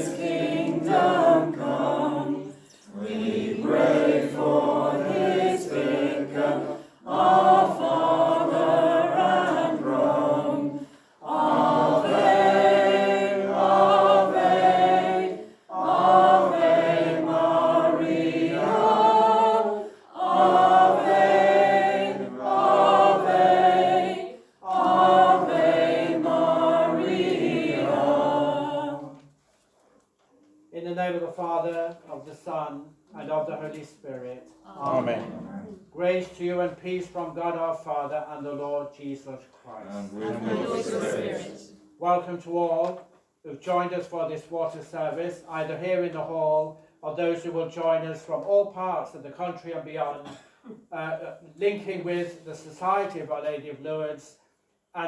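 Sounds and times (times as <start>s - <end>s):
choir singing a hymn: 0.0s - 29.3s, 39.9s - 41.8s.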